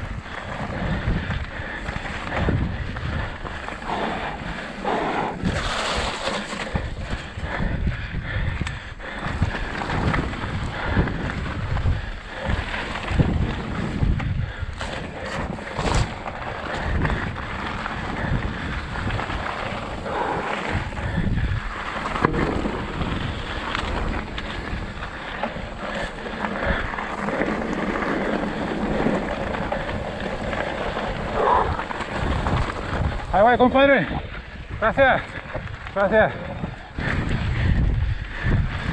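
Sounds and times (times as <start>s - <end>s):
bike tyre rumble: 0.0s - 38.9s
wind buffeting microphone: 0.0s - 38.9s
bike knocking over rough ground: 5.4s - 7.4s, 21.9s - 33.3s.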